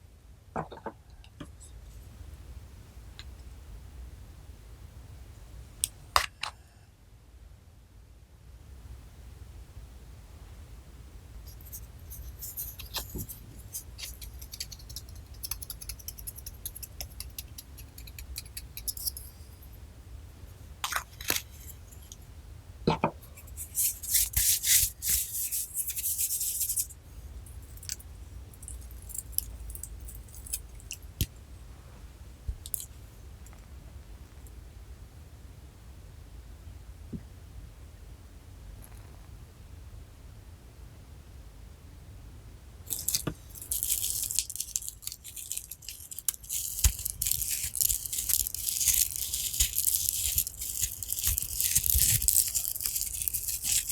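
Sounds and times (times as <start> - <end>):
sticky slime crackling: 42.9 - 53.9.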